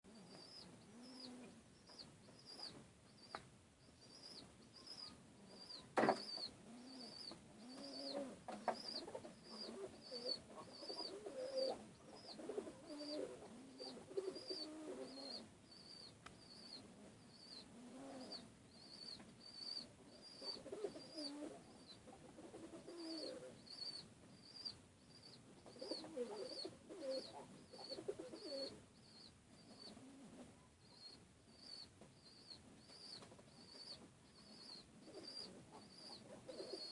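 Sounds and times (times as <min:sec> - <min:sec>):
pigeons cooing: 0:00.1 - 0:02.7, 0:04.2 - 0:24.0, 0:25.6 - 0:28.8, 0:29.7 - 0:30.5, 0:33.0 - 0:36.9.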